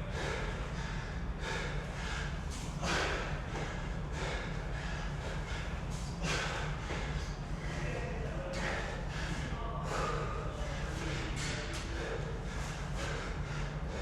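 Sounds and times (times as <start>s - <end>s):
person breathing hard: 0.0s - 14.0s
steady low hum: 0.0s - 14.0s.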